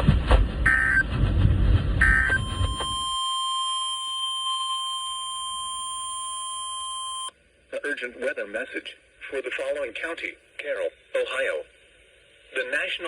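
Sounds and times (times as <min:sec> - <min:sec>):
steady warning alarm tone: 0:00.6 - 0:01.1, 0:02.0 - 0:07.3
harsh digital data bursts: 0:00.7 - 0:01.1, 0:02.0 - 0:07.3.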